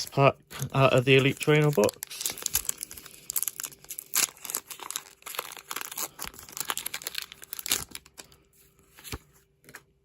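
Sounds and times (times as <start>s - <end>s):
foil pack tearing and crinkling: 0.8s - 8.4s.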